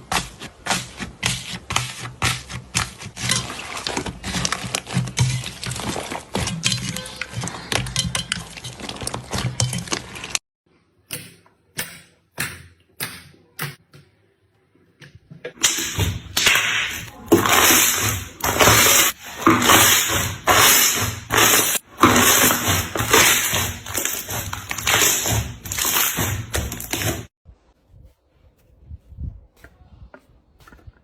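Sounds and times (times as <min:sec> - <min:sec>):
slime squishing and slapping: 0:15.6 - 0:27.3.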